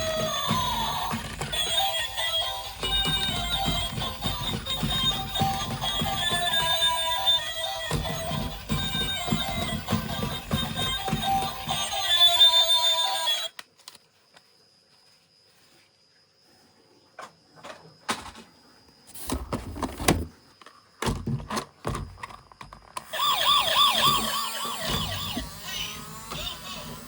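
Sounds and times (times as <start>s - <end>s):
toy electronic siren warbling: 0.0s - 13.6s, 23.0s - 27.0s
plastic toy vehicles clicking: 0.0s - 14.0s, 21.4s - 27.0s.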